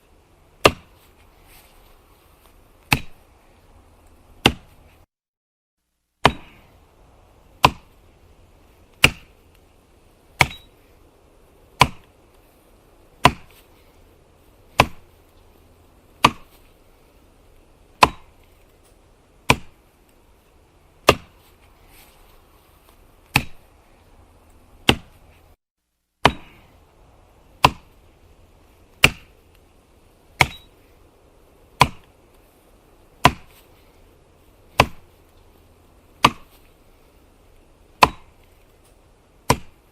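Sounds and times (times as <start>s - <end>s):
axe chopping firewood: 0.5s - 1.2s, 2.4s - 3.3s, 4.3s - 4.8s, 6.2s - 6.8s, 7.4s - 9.6s, 10.3s - 10.8s, 11.7s - 12.6s, 13.2s - 13.9s, 14.7s - 15.3s, 16.1s - 16.7s, 17.9s - 18.8s, 19.4s - 19.9s, 21.0s - 21.6s, 23.2s - 23.7s, 24.8s - 25.2s, 26.2s - 26.8s, 27.4s - 28.1s, 28.9s - 29.5s, 30.3s - 30.8s, 31.7s - 32.5s, 33.2s - 33.8s, 34.7s - 35.2s, 36.0s - 36.7s, 37.9s - 38.8s, 39.4s - 39.9s.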